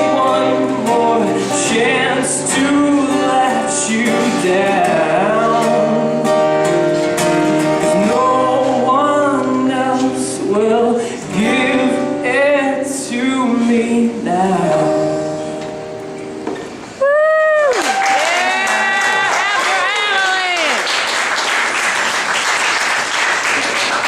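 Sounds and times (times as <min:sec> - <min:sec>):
person singing: 0:00.0 - 0:06.6, 0:07.7 - 0:15.5
guitar: 0:00.0 - 0:22.3.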